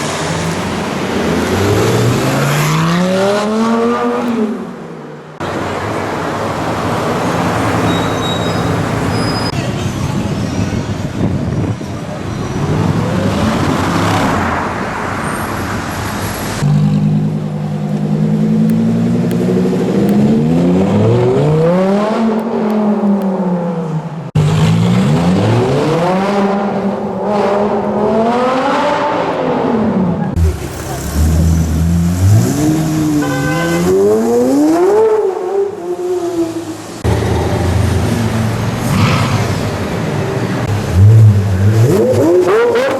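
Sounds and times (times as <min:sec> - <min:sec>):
car engines revving: 0:00.0 - 0:42.9.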